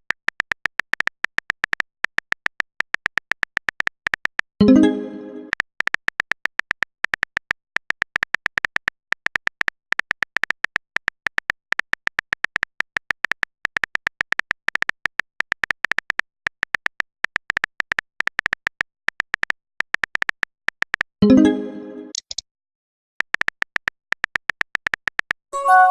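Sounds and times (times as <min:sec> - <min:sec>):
phone keyboard typing clicks: 0:00.0 - 0:04.5, 0:05.4 - 0:21.1, 0:22.1 - 0:22.4, 0:23.2 - 0:25.4
message alert tone: 0:04.6 - 0:05.5, 0:21.2 - 0:22.3, 0:25.6 - 0:25.9.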